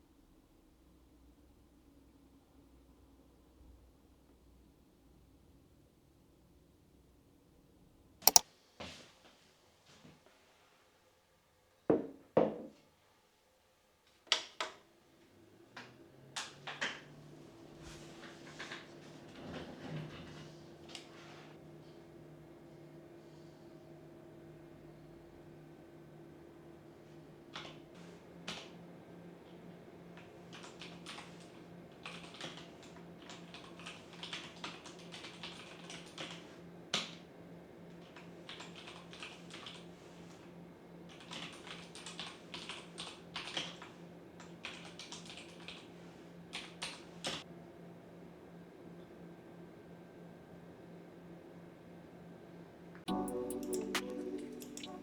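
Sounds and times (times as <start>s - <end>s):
computer keyboard typing: 53.1s - 55.0s.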